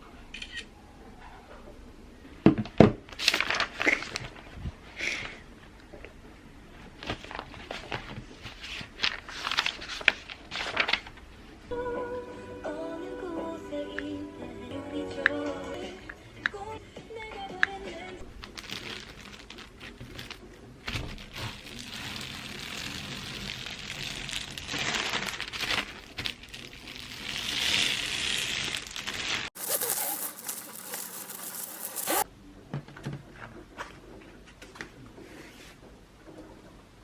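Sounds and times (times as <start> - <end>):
crinkling and rustling handling noise: 3.1 - 11.4, 18.3 - 32.3.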